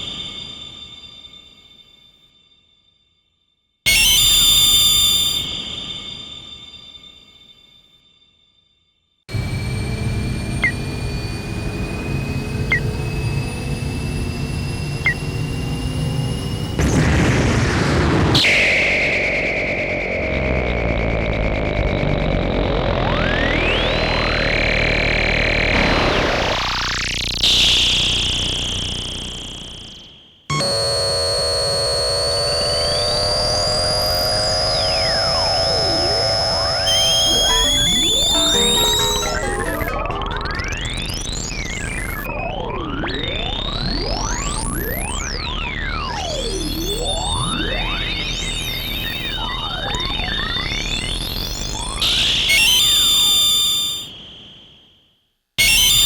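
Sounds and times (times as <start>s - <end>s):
high synth drone: 3.9s - 5.6s, 9.3s - 54.1s, 55.6s - 56.0s
rising whistle: 3.9s - 7.3s, 9.3s - 16.8s, 30.5s - 41.2s, 46.3s - 54.9s, 55.6s - 56.0s
synthesizer warp sweep: 16.8s - 29.3s, 30.5s - 44.3s, 52.0s - 54.1s.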